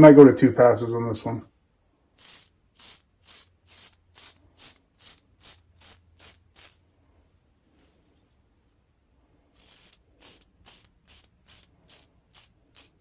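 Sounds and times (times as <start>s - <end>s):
razor scraping stubble: 2.2s - 6.8s, 9.5s - 13.0s.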